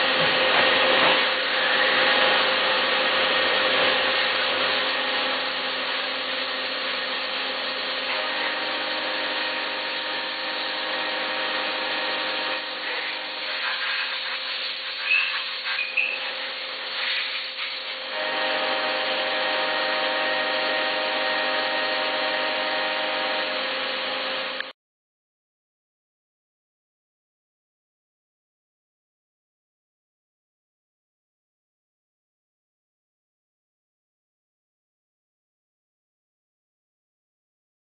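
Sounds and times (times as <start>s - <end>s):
milling machine whine: 0.0s - 24.7s
brief squeaks: 15.0s - 16.3s.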